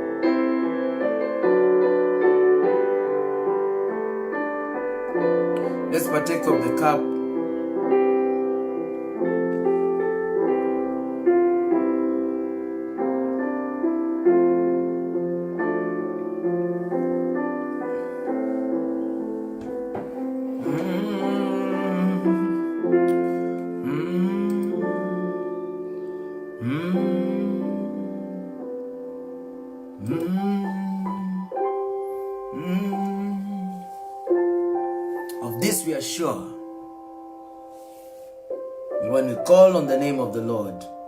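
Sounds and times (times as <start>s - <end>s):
soft piano chords: 0.0s - 41.0s
person singing: 20.5s - 28.7s, 30.0s - 34.4s.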